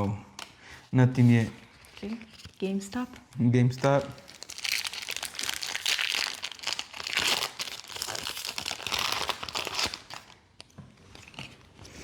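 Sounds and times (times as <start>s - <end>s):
foil wrapper crinkling and tearing: 3.9s - 11.7s.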